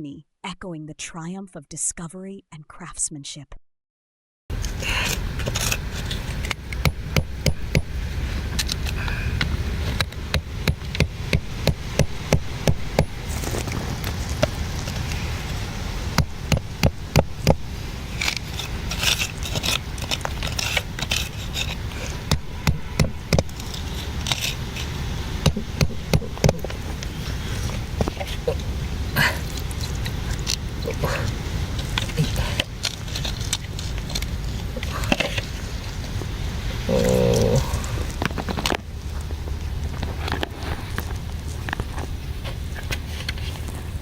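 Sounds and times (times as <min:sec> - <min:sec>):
steady low rumble: 0:04.5 - 0:44.0
digging tool striking rock: 0:06.4 - 0:08.0, 0:09.9 - 0:13.5, 0:16.1 - 0:17.6, 0:18.2 - 0:26.8.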